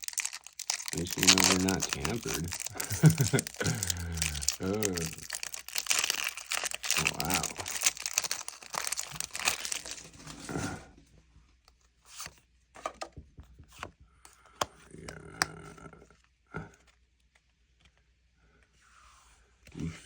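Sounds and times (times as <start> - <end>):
foil wrapper crinkling and tearing: 0.0 - 10.7
rustles of handling: 0.0 - 10.8.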